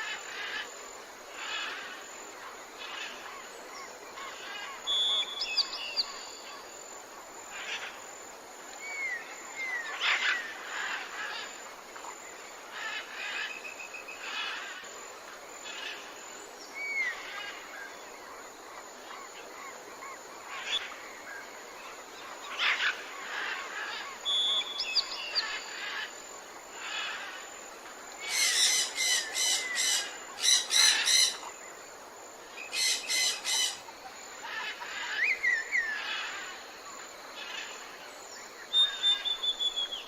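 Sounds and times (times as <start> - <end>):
background hiss: 0.0 - 40.0
bird calls: 28.2 - 31.6, 32.6 - 36.6, 38.6 - 40.0
bird trill: 28.3 - 31.5, 32.7 - 33.9.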